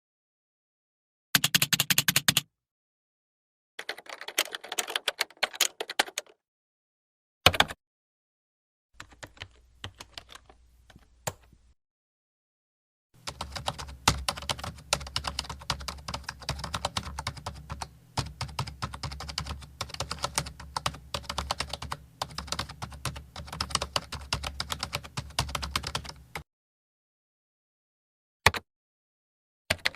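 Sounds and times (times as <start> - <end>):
typing on computer keyboard: 1.4 - 2.5, 3.8 - 6.4, 7.5 - 7.8, 9.0 - 11.4, 13.2 - 26.4.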